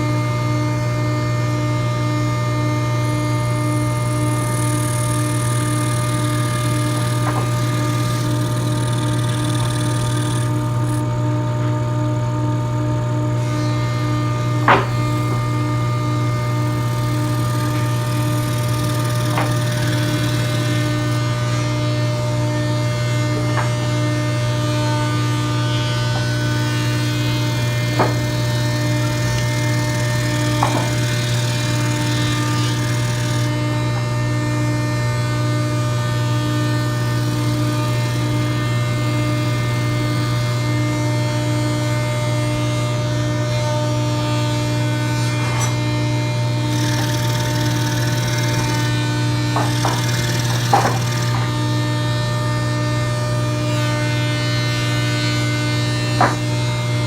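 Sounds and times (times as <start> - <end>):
scroll saw running: 0.0 - 42.0, 42.6 - 56.7
sharp clicks: 49.6 - 51.4.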